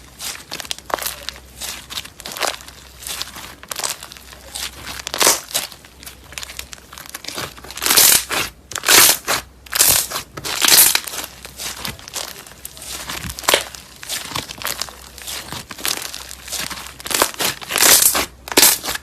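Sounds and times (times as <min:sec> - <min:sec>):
slime crinkling and crackling: 0:00.0 - 0:19.0.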